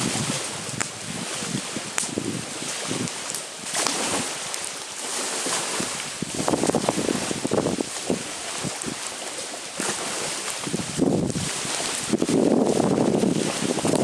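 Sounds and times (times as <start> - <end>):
wind buffeting microphone: 0.0 - 9.2, 9.8 - 14.0
lake waves washing ashore: 0.0 - 14.0
campfire crackling and popping: 0.1 - 9.1.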